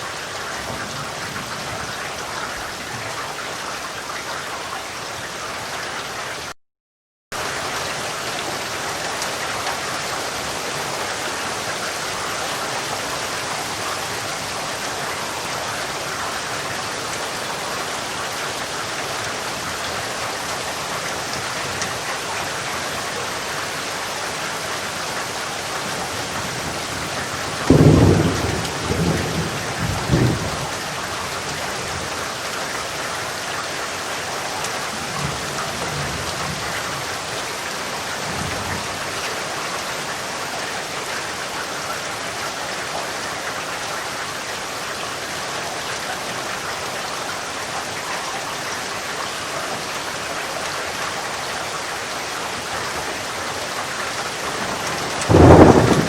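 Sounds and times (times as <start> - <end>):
heavy rain: 0.0 - 6.6, 7.4 - 56.0
distant thunder: 26.3 - 32.2, 54.4 - 56.0
thunderclap rumbling: 26.6 - 30.8, 54.4 - 56.0.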